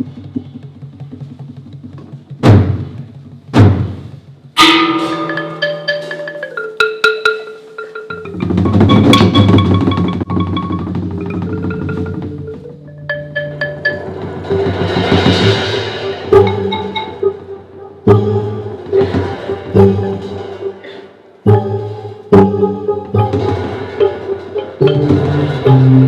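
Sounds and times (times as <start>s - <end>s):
percussion ensemble: 0.0s - 26.0s
sharp drum strikes: 2.4s - 12.2s
ringing mallet percussion tones: 4.6s - 20.9s, 21.5s - 26.0s.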